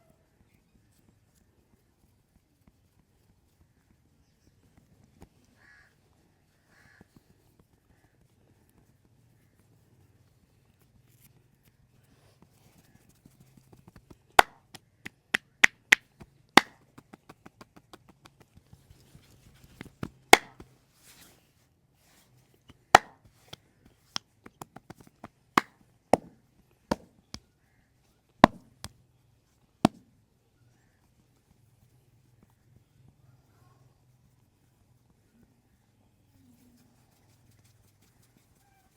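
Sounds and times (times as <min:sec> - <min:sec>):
hands slapping and tapping: 0:13.1 - 0:20.8, 0:22.6 - 0:27.5, 0:28.4 - 0:29.0.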